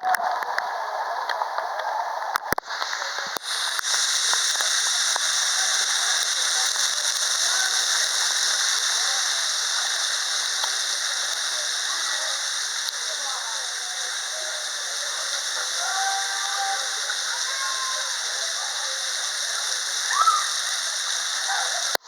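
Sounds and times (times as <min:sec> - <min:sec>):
waterfall rushing: 0:01.0 - 0:22.0.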